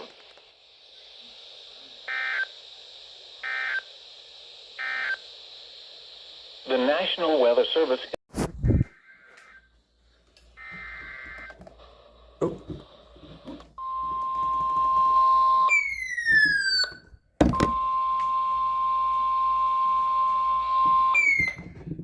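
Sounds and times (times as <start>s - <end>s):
steady warning alarm tone: 2.0s - 2.6s, 3.3s - 3.9s, 4.8s - 5.3s, 13.8s - 21.8s.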